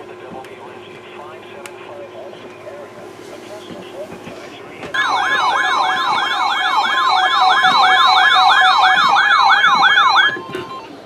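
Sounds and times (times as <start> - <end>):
electronic siren alert tone: 5.0 - 10.8.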